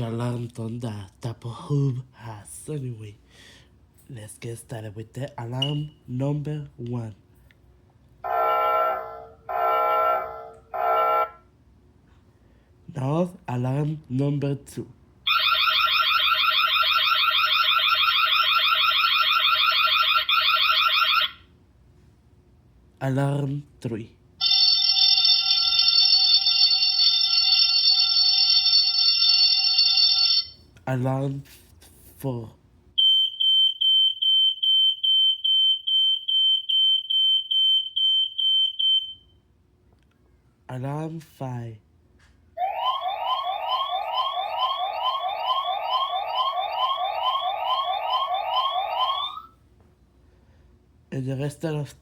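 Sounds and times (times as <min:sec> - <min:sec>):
electronic alarm siren warble: 0:08.2 - 0:11.4, 0:15.3 - 0:21.4, 0:24.4 - 0:30.5, 0:42.6 - 0:49.5
high-pitched alarm beeps: 0:42.6 - 0:49.5.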